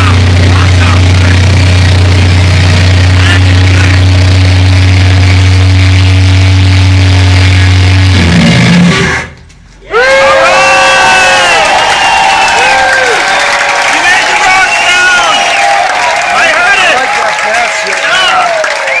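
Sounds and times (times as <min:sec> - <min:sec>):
distorted rock band drone: 0:00.0 - 0:09.7.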